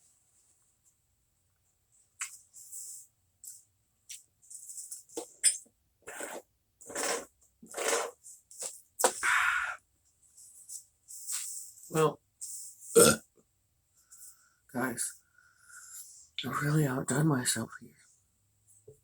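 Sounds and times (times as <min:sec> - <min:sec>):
breathy puffs: 0:09.1 - 0:09.8.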